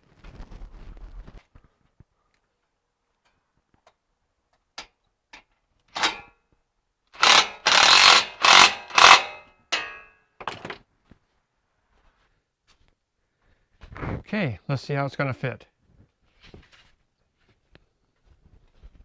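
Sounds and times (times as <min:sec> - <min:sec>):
cordless drill driving bolts: 0:06.0 - 0:06.3, 0:07.2 - 0:10.0.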